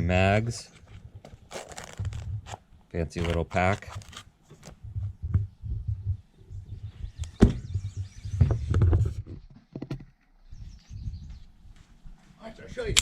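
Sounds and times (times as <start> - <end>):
rustling of handled case: 0.6 - 6.2.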